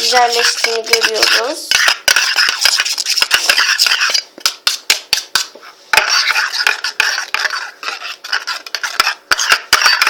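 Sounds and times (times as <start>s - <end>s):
spoon stirring slime: 0.0s - 10.0s.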